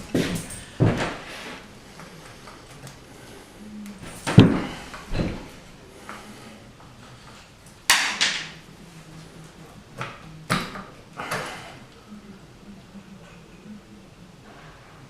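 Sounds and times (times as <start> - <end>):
metal tools clanking: 0.0 - 1.2
faint low hum: 0.0 - 15.0.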